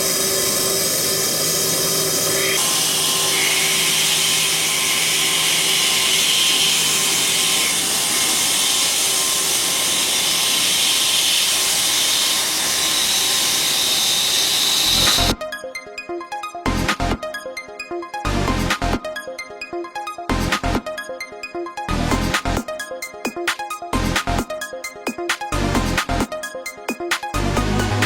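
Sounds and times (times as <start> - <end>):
lathe machining hiss: 0.0 - 15.3
electronic music with a beat: 15.0 - 28.0.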